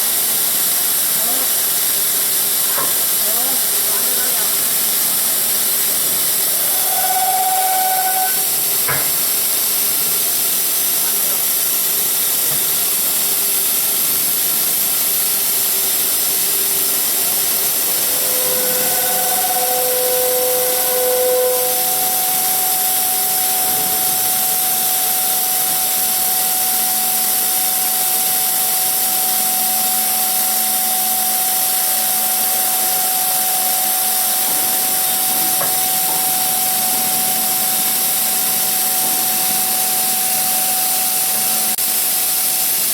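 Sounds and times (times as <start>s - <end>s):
drilling machine hiss and whine: 0.0s - 42.9s
steady machine tone: 6.3s - 8.9s, 14.8s - 28.7s, 32.5s - 41.8s.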